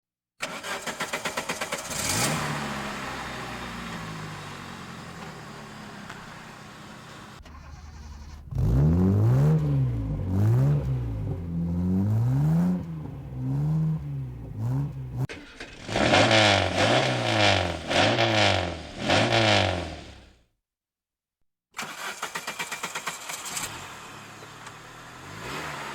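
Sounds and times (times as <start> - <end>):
car engine revving: 0.4 - 20.3, 23.0 - 25.9
car engine idling: 2.5 - 8.9.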